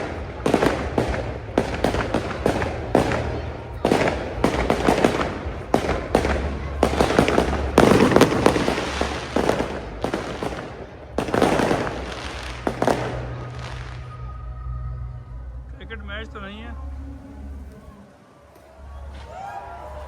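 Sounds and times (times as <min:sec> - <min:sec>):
fireworks bangs: 0:00.0 - 0:14.3
fireworks crackling bursts: 0:00.0 - 0:15.0.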